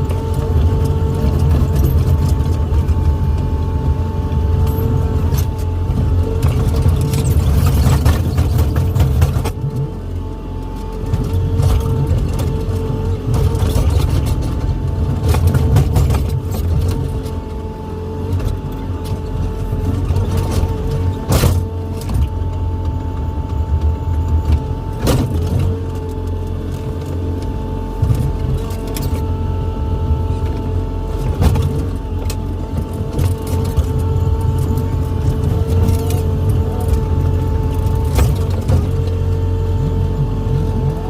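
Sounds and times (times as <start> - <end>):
diesel engine rumbling under load: 0.0 - 41.0.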